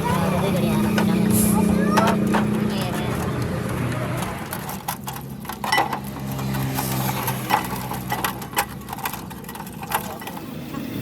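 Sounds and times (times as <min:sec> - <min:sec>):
low engine hum: 0:00.0 - 0:11.0.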